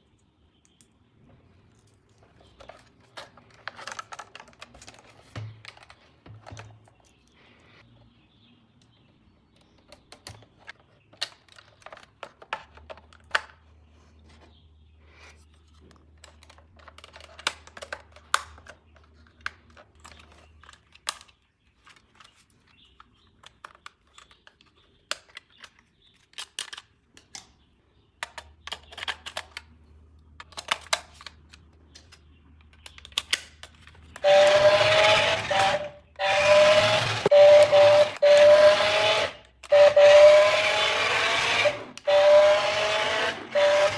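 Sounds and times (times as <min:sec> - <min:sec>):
plastic clicks and rattles: 0:01.6 - 0:07.4, 0:08.8 - 0:13.7, 0:15.6 - 0:34.3
toy car electric motor whirring: 0:34.1 - 0:43.9.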